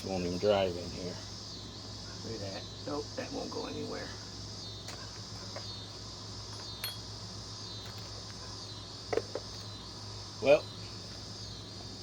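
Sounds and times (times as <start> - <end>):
insects trilling: 0.0 - 12.0.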